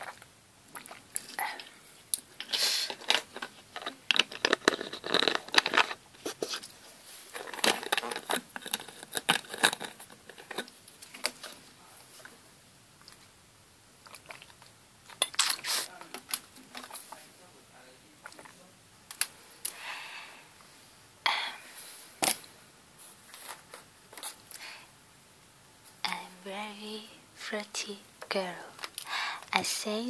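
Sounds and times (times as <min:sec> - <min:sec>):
crinkling handling sounds: 0:01.1 - 0:13.4, 0:22.1 - 0:24.7.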